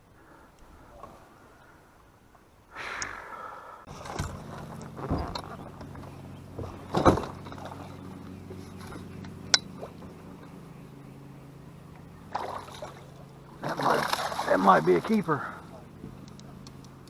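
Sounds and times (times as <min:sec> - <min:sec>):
boat motor humming: 0:00.0 - 0:17.0
knocks and thumps on boat: 0:03.9 - 0:10.5.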